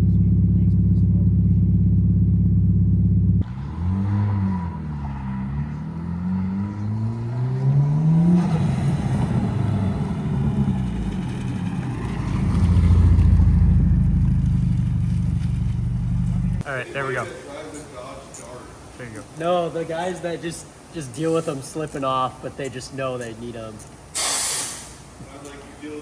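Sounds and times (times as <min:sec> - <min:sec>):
car engine revving: 0:00.0 - 0:19.4.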